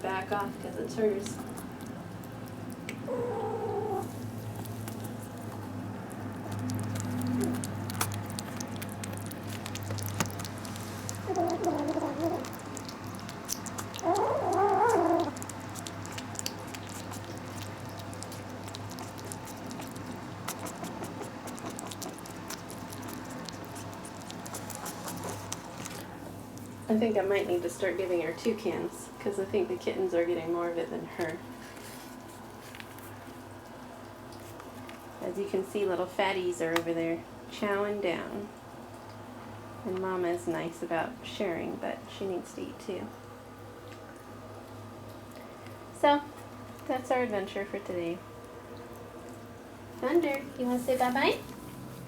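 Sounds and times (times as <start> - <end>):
steady low hum: 0.0 - 52.0
cats eating ticking: 0.1 - 26.9, 47.8 - 50.6
cat calling: 3.0 - 4.2, 11.2 - 12.9, 13.8 - 15.5.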